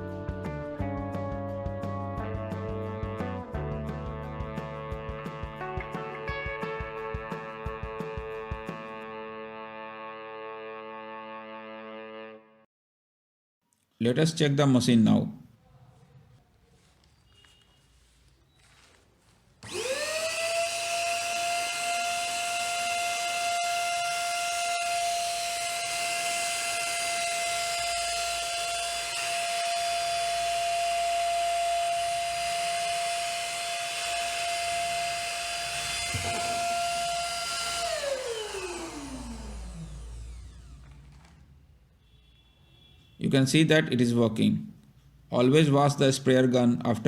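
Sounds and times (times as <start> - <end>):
paint sprayer motor whine: 19.6 - 41.6.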